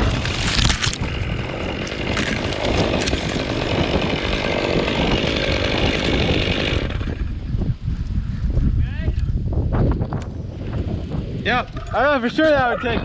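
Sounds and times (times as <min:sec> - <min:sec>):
chainsaw running: 0:00.0 - 0:07.4.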